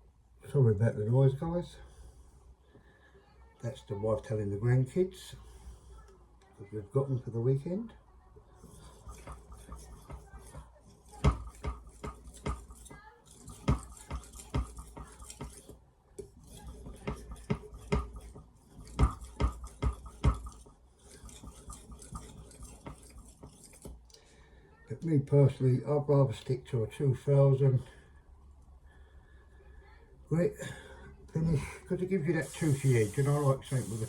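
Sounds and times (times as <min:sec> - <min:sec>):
knife scraping on whetstone: 0:08.6 - 0:24.0, 0:32.3 - 0:34.0.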